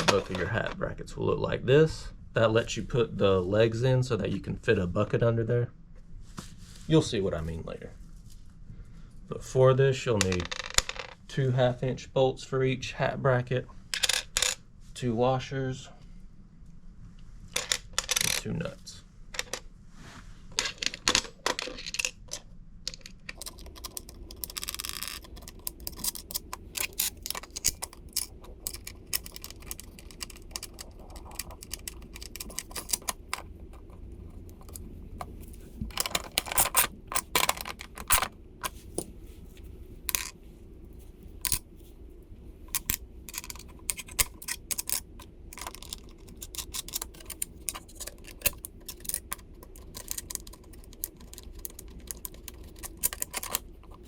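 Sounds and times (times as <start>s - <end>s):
metal hardware clinking: 23.3s - 39.1s, 41.4s - 41.6s, 42.7s - 54.0s
ratcheting socket wrench: 42.8s - 54.0s.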